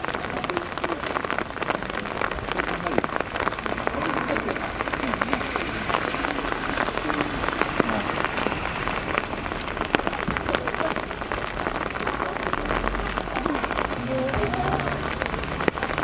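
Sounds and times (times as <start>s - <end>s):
steady rain with ticking drops: 0.0s - 16.0s.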